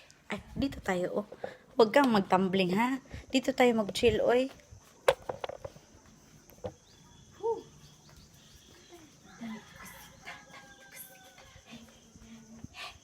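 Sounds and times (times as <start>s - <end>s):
rooster crowing: 9.2s - 11.9s.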